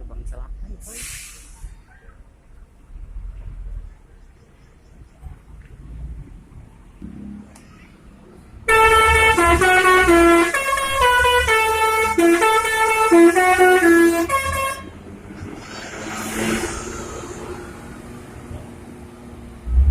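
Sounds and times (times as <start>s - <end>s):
bus engine rumble: 0.0s - 19.9s
road noise: 0.0s - 19.9s
multi-tone air horn tune: 8.7s - 14.9s.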